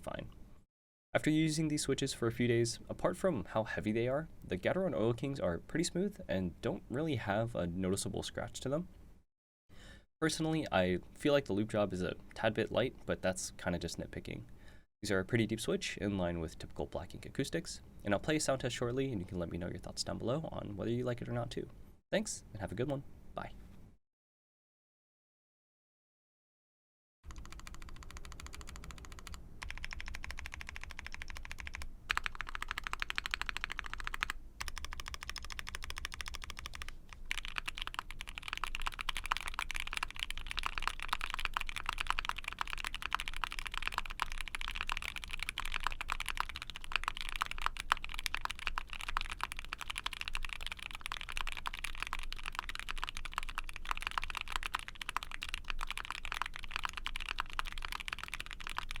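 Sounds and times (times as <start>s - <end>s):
mechanical keyboard typing: 27.3s - 59.0s.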